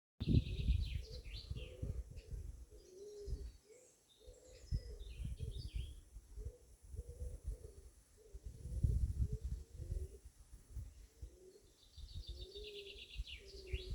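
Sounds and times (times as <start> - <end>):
wind rumble on microphone: 0.2 - 3.6, 4.5 - 13.9
birds chirping: 0.2 - 6.0, 11.2 - 13.9.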